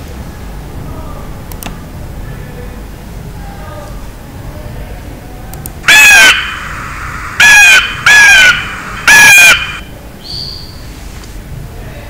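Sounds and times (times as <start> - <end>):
harsh bird caws: 5.9 - 9.9.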